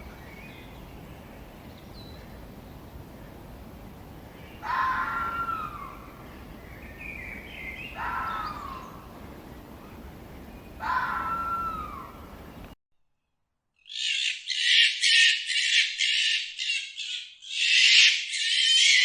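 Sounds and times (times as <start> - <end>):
steady hiss: 0.0 - 12.8
fox calling: 2.0 - 12.8.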